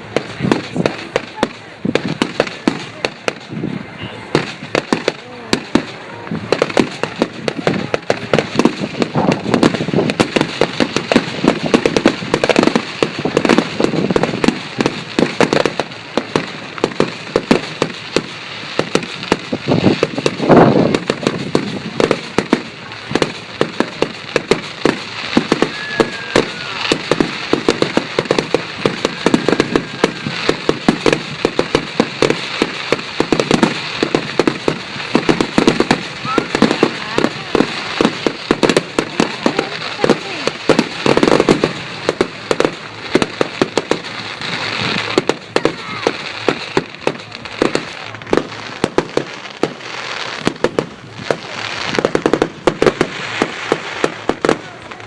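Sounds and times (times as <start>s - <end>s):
fireworks bangs and crackles: 0.0s - 55.0s
loud firework boom: 4.3s - 44.0s.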